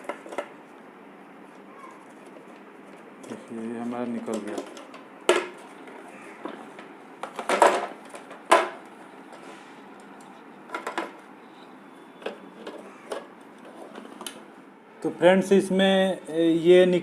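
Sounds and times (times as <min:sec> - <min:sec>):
appliance parts knocking and clattering: 0:03.3 - 0:08.9, 0:10.7 - 0:11.2.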